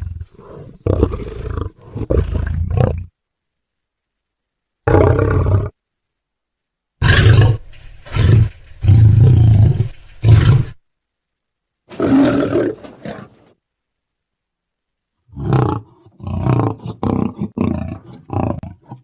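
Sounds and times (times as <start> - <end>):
lion roars: 0.0 - 3.1, 4.9 - 5.8, 7.0 - 10.8, 11.9 - 13.5, 15.3 - 19.0.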